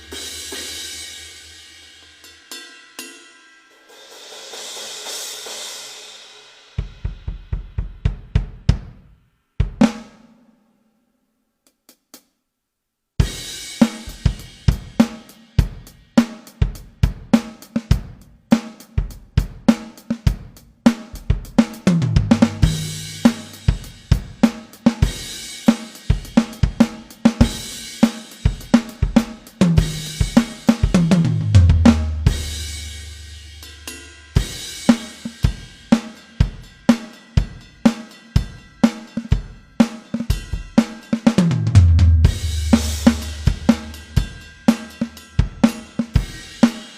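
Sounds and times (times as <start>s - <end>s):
electronic drum kit beat: 0.0s - 0.8s, 6.8s - 10.2s, 13.2s - 46.9s
tom drum fills: 6.8s - 10.1s, 18.9s - 46.9s.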